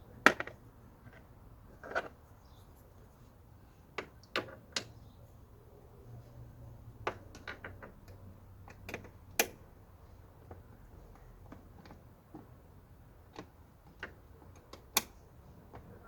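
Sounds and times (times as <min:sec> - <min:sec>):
clicks and knocks of parts and tools: 0:03.9 - 0:05.0, 0:07.0 - 0:09.6.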